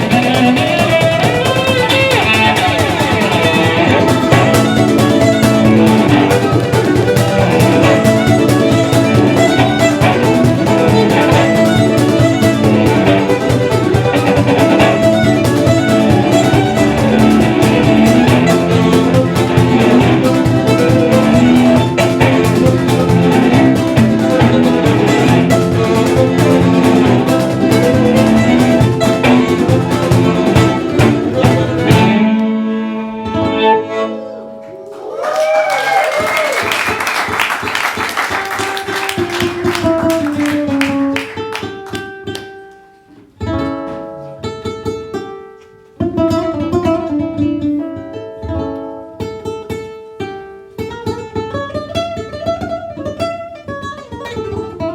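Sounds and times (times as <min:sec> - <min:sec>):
live band playing: 0:00.0 - 0:35.2, 0:35.8 - 0:42.7.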